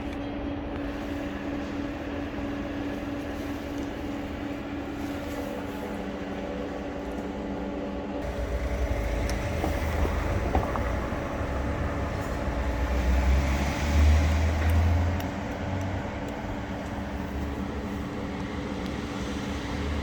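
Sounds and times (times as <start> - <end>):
steady low hum: 0.0 - 20.0
vehicle passing by: 8.2 - 17.9.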